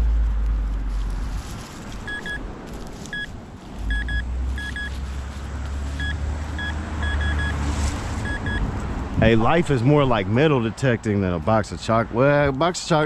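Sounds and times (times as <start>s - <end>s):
low rumble: 0.0s - 3.0s
metal detector beeps: 2.0s - 2.4s, 3.1s - 3.3s, 3.9s - 5.0s, 6.0s - 7.6s, 8.2s - 8.6s.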